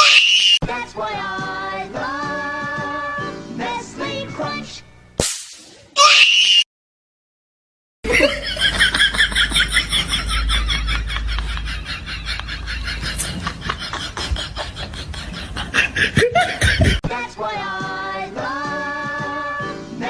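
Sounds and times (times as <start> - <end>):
person laughing hard: 8.0 - 17.0.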